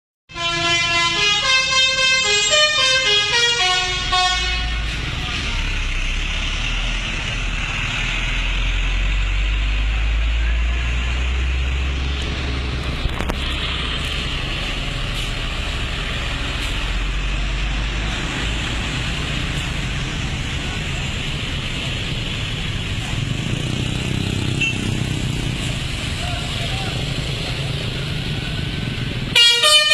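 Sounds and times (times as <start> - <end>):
musical bus horn tune: 0.3 - 5.6, 29.3 - 29.9
low vehicle rumble with hiss: 25.0 - 29.4.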